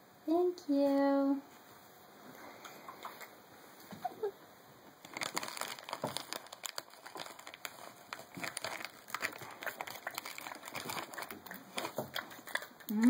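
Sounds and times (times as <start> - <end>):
plastic packaging crinkling: 5.0 - 13.0.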